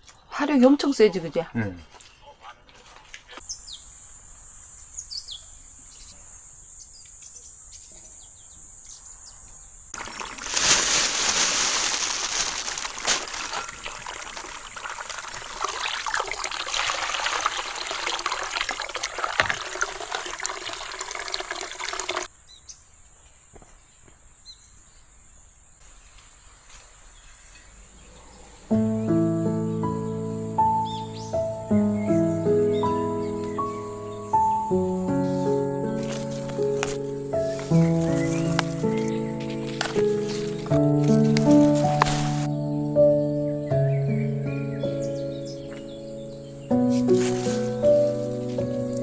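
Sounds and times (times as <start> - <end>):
water running: 10.0 - 22.3, 32.5 - 42.5, 46.8 - 49.0
bird chirps: 28.0 - 36.0, 36.6 - 49.0.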